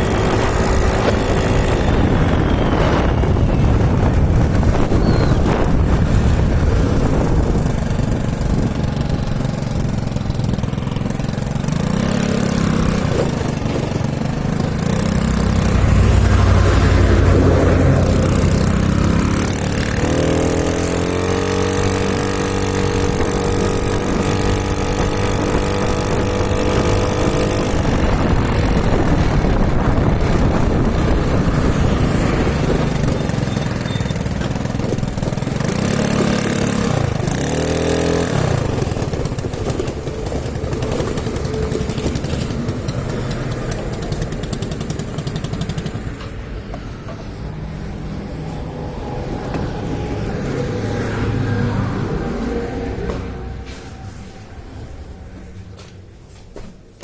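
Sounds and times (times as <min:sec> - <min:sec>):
motorcycle engine revving: 0:00.0 - 0:46.6
rushing noise: 0:11.7 - 0:55.8.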